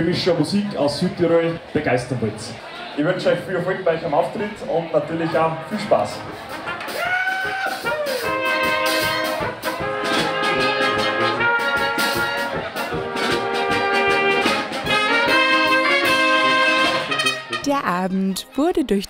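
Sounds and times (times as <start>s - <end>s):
brass band playing: 5.8s - 18.7s.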